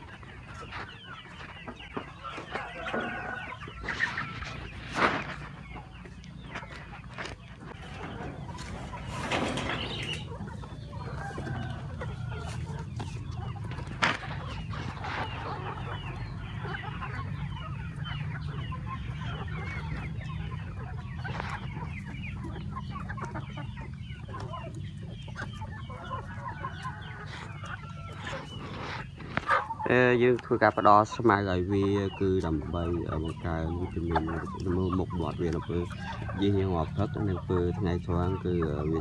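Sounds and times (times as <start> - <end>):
chickens clucking: 0.0 - 39.0.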